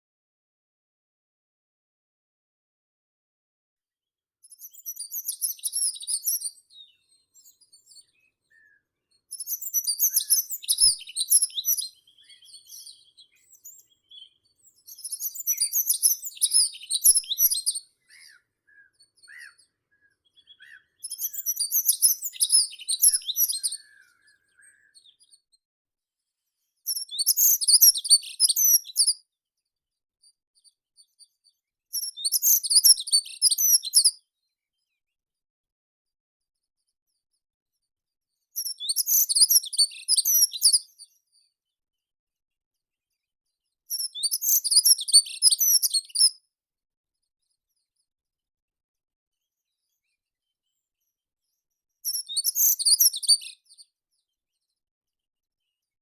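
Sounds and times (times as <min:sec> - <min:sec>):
songbird singing high rapid phrase: 0:09.3 - 0:25.1.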